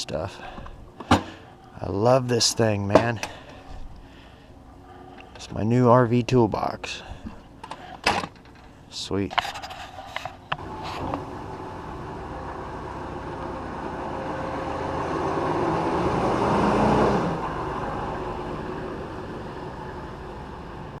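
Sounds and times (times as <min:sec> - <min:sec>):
vehicle passing by: 0:10.6 - 0:21.0.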